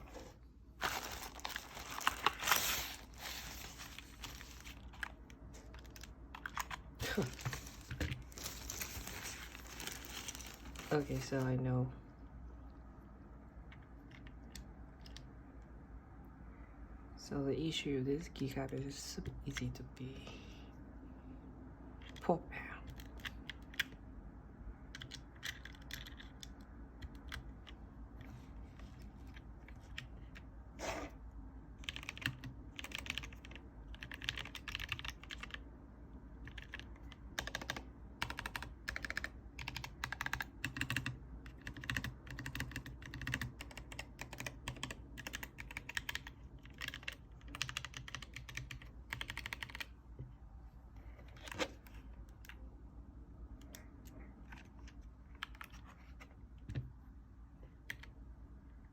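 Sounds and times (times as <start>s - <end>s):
typing on mechanical keyboard: 4.2s - 8.1s, 22.9s - 24.0s, 24.9s - 27.8s, 31.8s - 35.6s, 36.4s - 49.9s, 55.4s - 55.8s, 57.8s - 58.2s.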